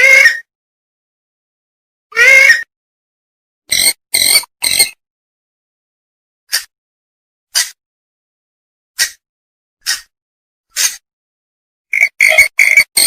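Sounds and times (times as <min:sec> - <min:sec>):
rasping bird calls: 0:03.7 - 0:05.0.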